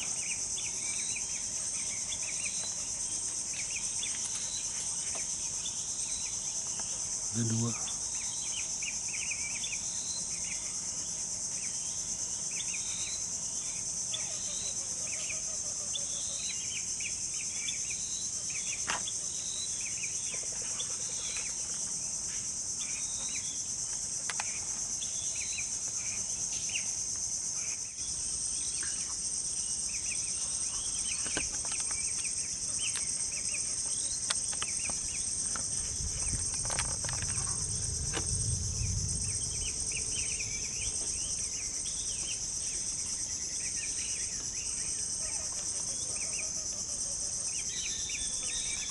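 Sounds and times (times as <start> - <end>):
dense chorus of insects: 0.0 - 48.9
low rumble: 35.6 - 42.6.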